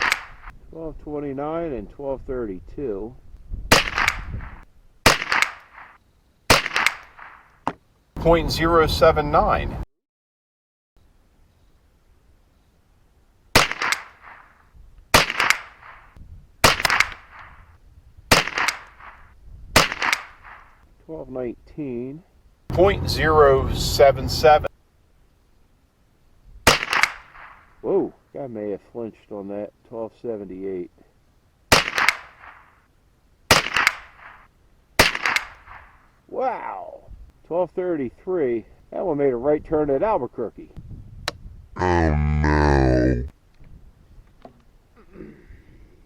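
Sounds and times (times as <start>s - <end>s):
rifle shots: 5.1s - 7.4s.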